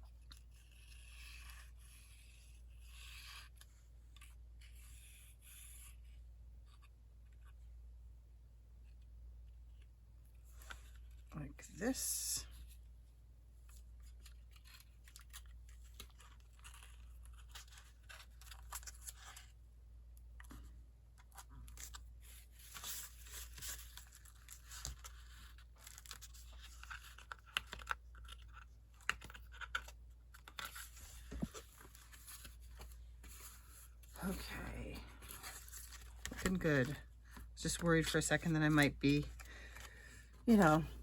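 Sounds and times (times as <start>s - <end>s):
paper rustling and scratching: 0.1s - 7.6s, 13.6s - 19.6s, 20.4s - 40.9s.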